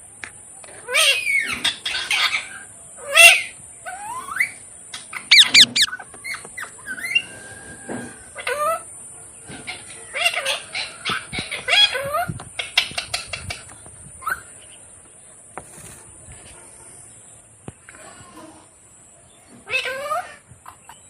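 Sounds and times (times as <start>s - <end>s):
parrot squawks and chirps: 0.9s - 7.4s, 19.7s - 21.0s
parrot whistling: 5.2s - 6.0s.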